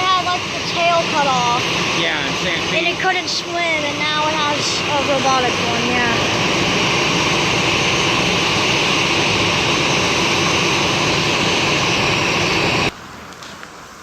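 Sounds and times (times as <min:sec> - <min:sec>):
jet engines running: 0:00.0 - 0:13.0
rain: 0:12.9 - 0:14.0.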